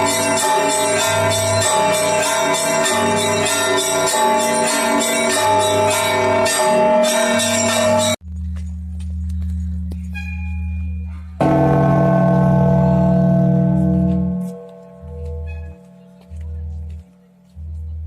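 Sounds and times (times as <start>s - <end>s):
hum of large bells: 0.0s - 8.2s, 10.5s - 18.0s
small church bells clanging: 0.0s - 8.2s, 11.4s - 17.4s.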